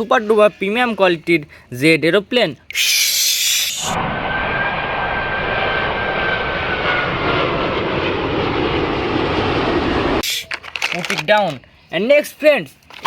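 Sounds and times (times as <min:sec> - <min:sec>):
high whistle: 0:02.7 - 0:06.1
aeroplane engine drone: 0:02.9 - 0:10.5.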